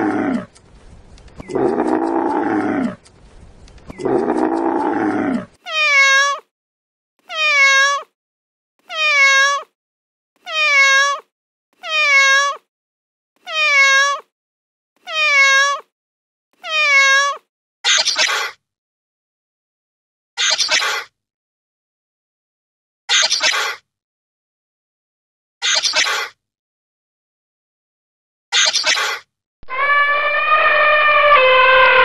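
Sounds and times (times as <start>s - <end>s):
animal high meow-like call: 1.4s - 3.0s, 4.0s - 6.4s, 29.6s - 32.0s
rough noisy animal calls: 1.4s - 3.0s, 3.9s - 5.6s, 29.6s - 32.0s.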